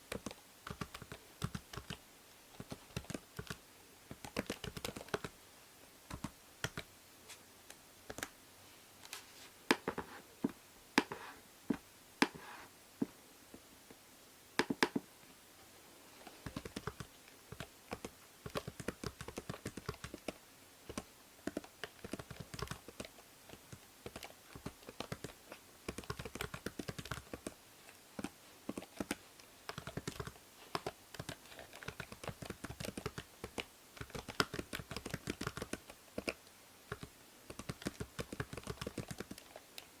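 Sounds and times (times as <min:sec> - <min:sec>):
microphone hiss: 0:00.0 - 0:40.0
typing on computer keyboard: 0:00.1 - 0:02.0, 0:02.6 - 0:05.4, 0:06.1 - 0:06.9, 0:16.4 - 0:27.6, 0:28.2 - 0:39.9.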